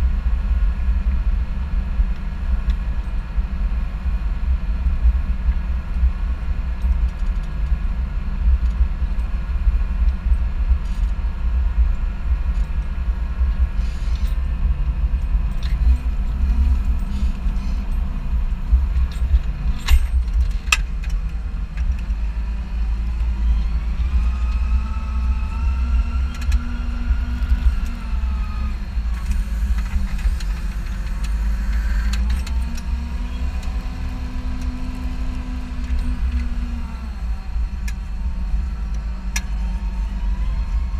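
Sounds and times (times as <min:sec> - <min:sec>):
high whine: 0:00.0 - 0:40.9
tractor engine running: 0:00.0 - 0:40.9.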